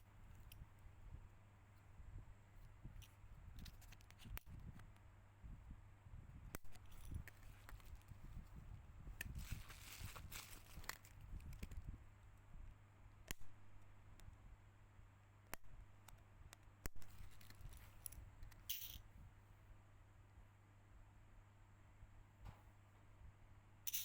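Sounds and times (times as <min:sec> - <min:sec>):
steady low hum: 0:00.0 - 0:24.0
sharp clicks of small parts: 0:15.5 - 0:19.0.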